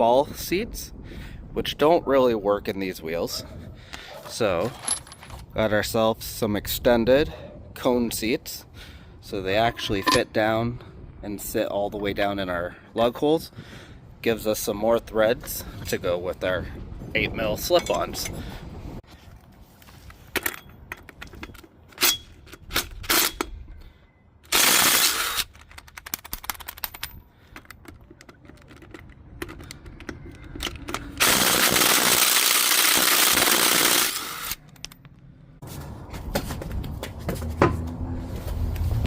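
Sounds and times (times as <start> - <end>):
metallic clicks of tools handled: 9.7 - 10.3, 25.4 - 31.2, 34.5 - 35.3.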